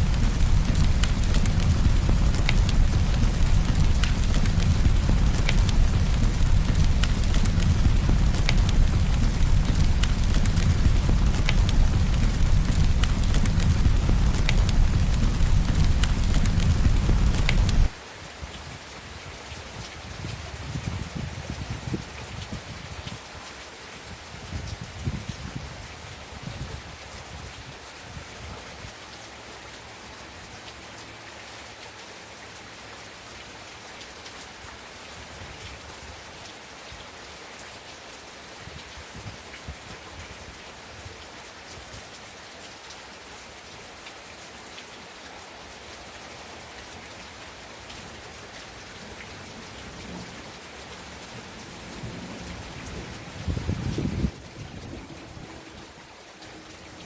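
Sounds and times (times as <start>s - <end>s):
low rumble: 0.0s - 17.9s
wood fire crackling: 0.0s - 18.0s
rain pattering: 0.0s - 57.0s.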